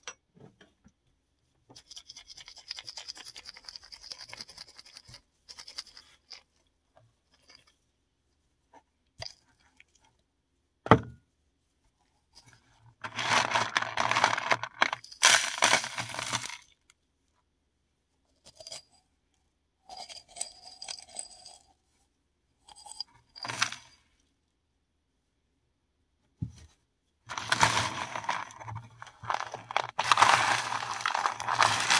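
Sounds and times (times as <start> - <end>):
mothball tablets crushed by hand: 13.0 - 16.6, 27.3 - 31.9
pieces clinking: 13.0 - 16.6, 27.3 - 31.9.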